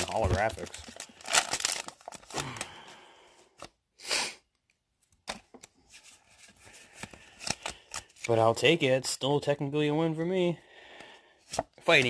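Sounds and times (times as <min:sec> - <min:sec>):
cards rustling: 0:00.0 - 0:03.0, 0:05.0 - 0:08.4.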